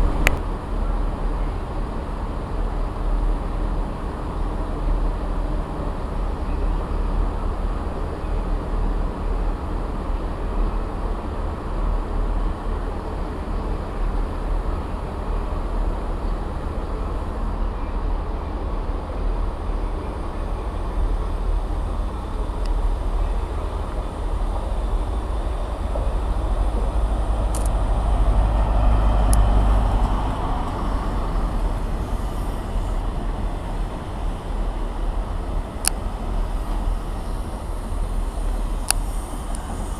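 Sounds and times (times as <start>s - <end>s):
train rumbling: 0.0s - 39.9s.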